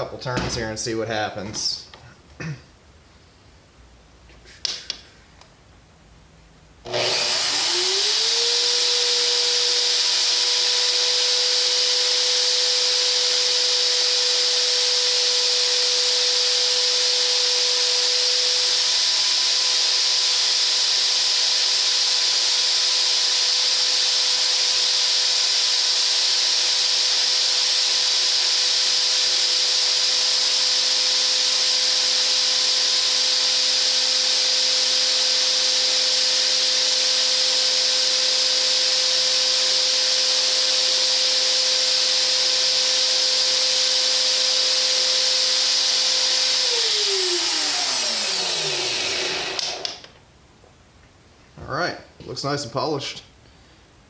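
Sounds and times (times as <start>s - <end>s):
drill motor whine: 6.8s - 50.1s
drill bit grinding hiss: 15.2s - 50.0s.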